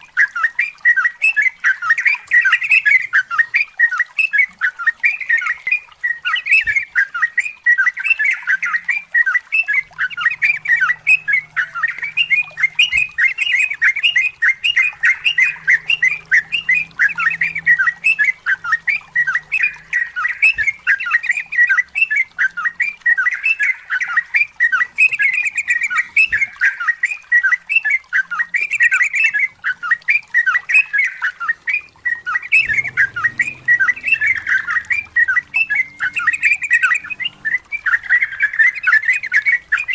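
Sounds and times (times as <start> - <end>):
bird singing bubbling chirps: 0.0 - 39.9.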